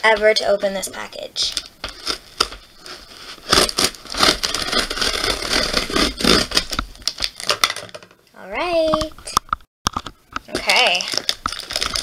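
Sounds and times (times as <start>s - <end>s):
packing material crinkling: 1.5s - 7.8s, 10.5s - 12.0s
tape and cardboard tearing: 1.9s - 7.5s.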